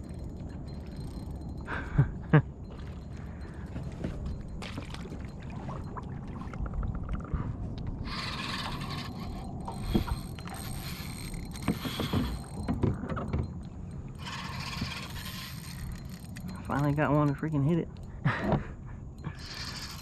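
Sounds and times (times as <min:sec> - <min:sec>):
fishing reel whirring: 0:00.0 - 0:01.8, 0:02.7 - 0:05.4, 0:08.0 - 0:18.1, 0:19.2 - 0:20.0.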